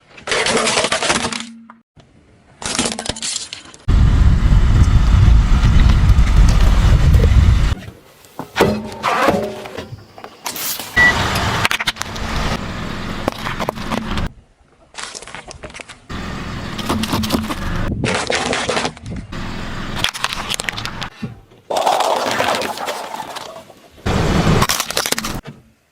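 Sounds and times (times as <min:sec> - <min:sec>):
loud deep rumble: 0:03.9 - 0:07.8
tyres crushing crunchy objects: 0:16.8 - 0:19.3, 0:24.4 - 0:25.4
brittle things crushed under tyres: 0:24.6 - 0:25.4.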